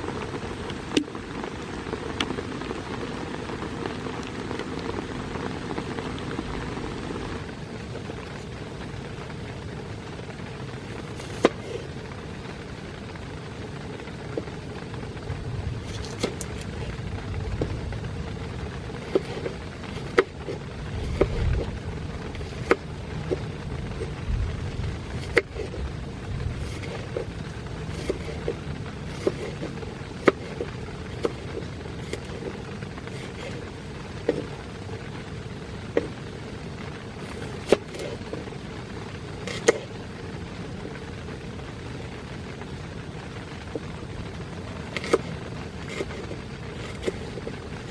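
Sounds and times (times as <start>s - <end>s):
heavy raindrops tapping fabric: 0.0s - 47.9s
rain hissing on a tent: 0.0s - 47.9s
low rumble: 14.6s - 37.3s.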